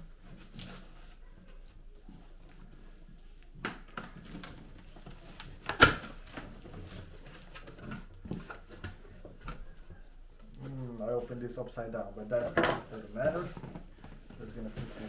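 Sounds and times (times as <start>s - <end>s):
cardboard rustling and knocking: 3.8s - 10.0s, 12.4s - 15.0s.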